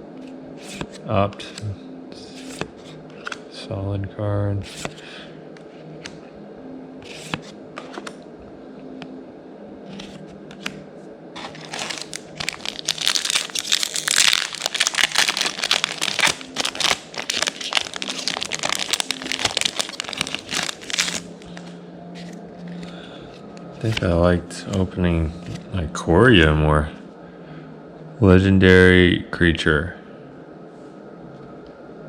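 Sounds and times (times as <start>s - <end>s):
foil wrapper tearing and crinkling: 11.4s - 21.7s.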